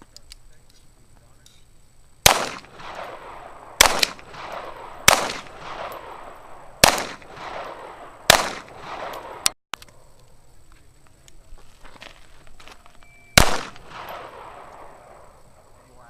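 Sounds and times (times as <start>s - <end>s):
pistol shots echoing: 2.2s - 9.5s, 13.4s - 15.4s.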